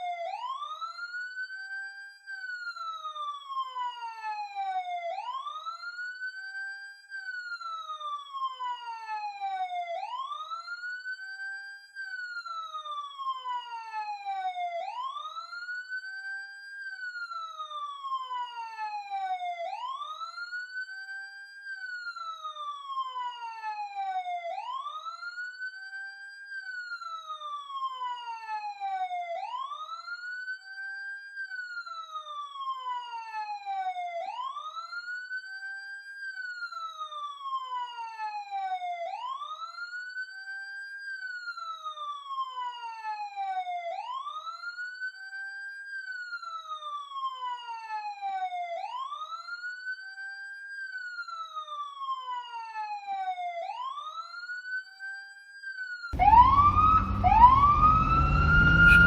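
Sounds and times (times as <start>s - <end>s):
police siren wailing: 0.0s - 59.0s.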